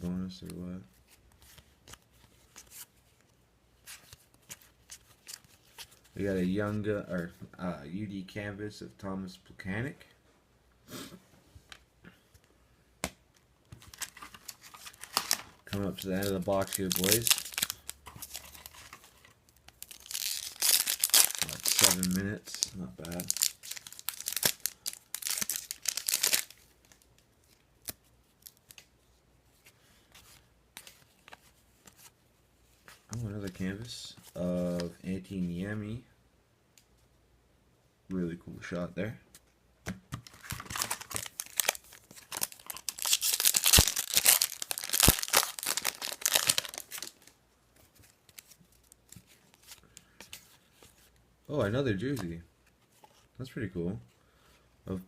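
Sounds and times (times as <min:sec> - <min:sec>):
foil wrapper tearing and crinkling: 0:13.9 - 0:19.0, 0:19.6 - 0:27.0, 0:40.3 - 0:47.3.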